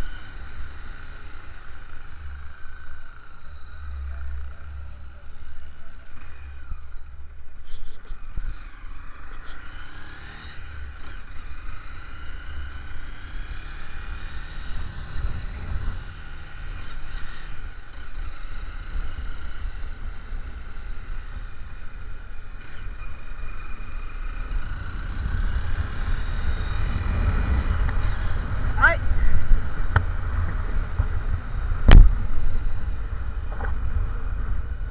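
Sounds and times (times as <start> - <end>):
faint whine: 0.0 - 9.5
vehicle engine and road rumble: 0.0 - 34.9.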